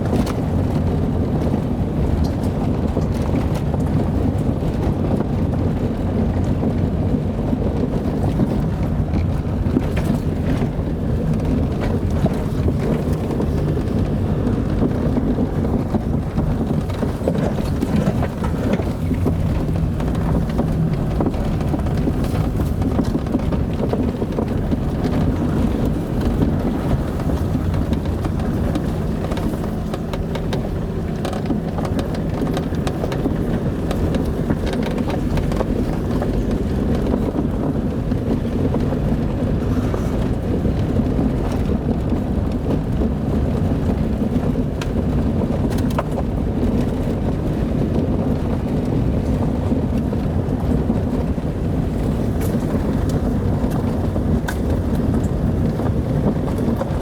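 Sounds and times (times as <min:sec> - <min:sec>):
car engine hum: 0:00.0 - 0:57.0
road rumble: 0:00.0 - 0:57.0
faint knocks and clicks: 0:07.8 - 0:48.0.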